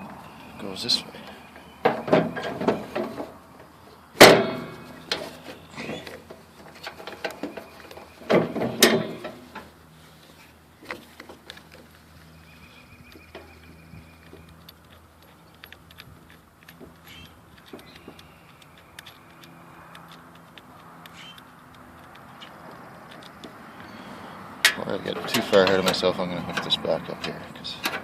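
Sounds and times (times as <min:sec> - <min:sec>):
small clicks and rattles: 0:13.1 - 0:23.9.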